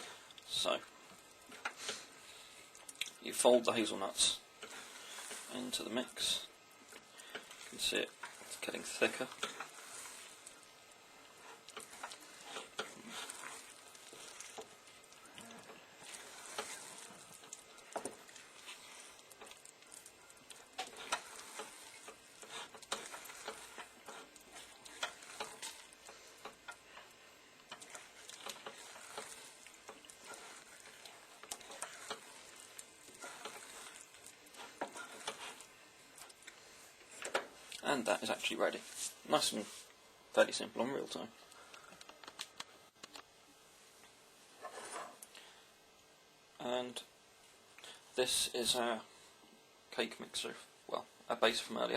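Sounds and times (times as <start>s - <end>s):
faint sizzling hiss: 0.0s - 51.9s
spoon scraping a pan: 3.3s - 37.6s, 44.6s - 45.2s.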